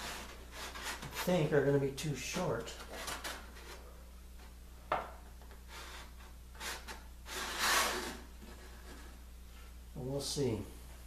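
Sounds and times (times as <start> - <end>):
wood scraping on wood: 0.0 - 1.7, 5.7 - 9.2
steady low hum: 0.0 - 11.0
wood knocking: 4.9 - 5.2.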